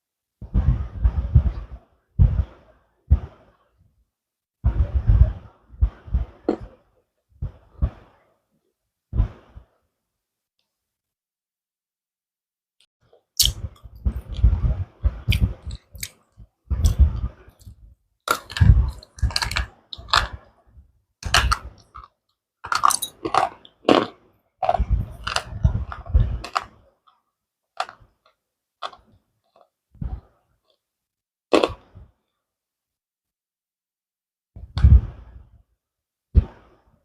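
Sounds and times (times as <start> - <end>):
slate pencils being chewed: 16.8 - 20.4, 21.2 - 26.7, 27.8 - 29.7.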